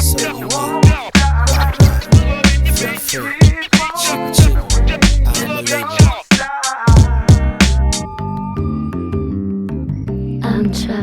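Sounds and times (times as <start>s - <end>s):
hip-hop beat with bass: 0.0s - 8.5s.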